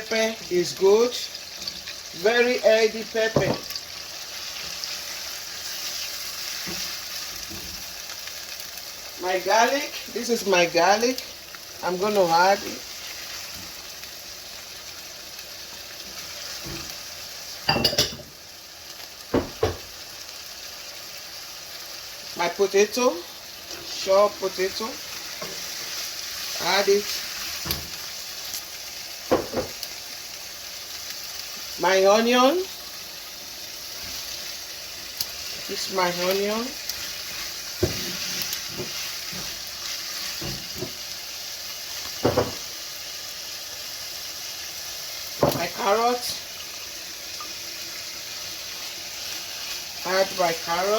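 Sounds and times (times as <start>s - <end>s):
meat sizzling in a frying pan: 0.0s - 50.9s
spoon clinking and scraping a pan: 17.7s - 18.3s
utensil knocking against a pan: 19.3s - 19.9s.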